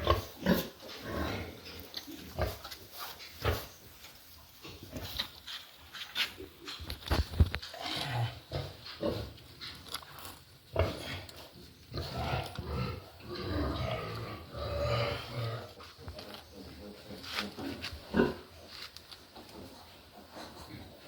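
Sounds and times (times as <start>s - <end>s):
pigs grunting: 0.0s - 3.8s, 7.6s - 18.6s.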